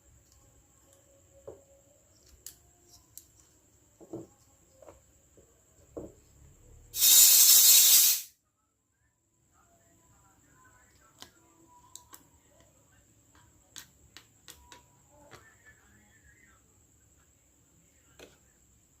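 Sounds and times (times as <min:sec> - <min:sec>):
loud steady hiss: 0:06.9 - 0:08.4.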